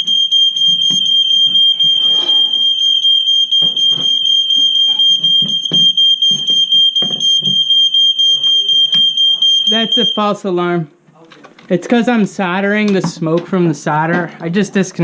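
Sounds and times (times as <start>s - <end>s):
smoke alarm high-pitched tone: 0.0s - 10.5s.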